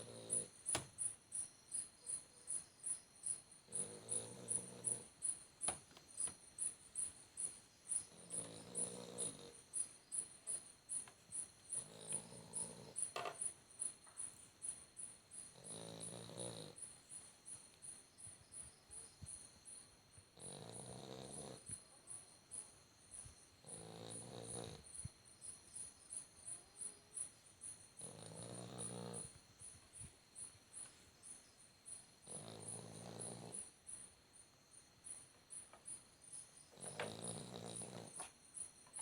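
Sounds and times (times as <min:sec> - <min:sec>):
dog snoring: 0:00.0 - 0:00.8, 0:03.7 - 0:05.4, 0:08.0 - 0:09.9, 0:11.7 - 0:13.5, 0:15.4 - 0:17.0, 0:20.3 - 0:21.8, 0:23.6 - 0:25.1, 0:28.0 - 0:29.4, 0:32.2 - 0:33.8, 0:36.7 - 0:39.0.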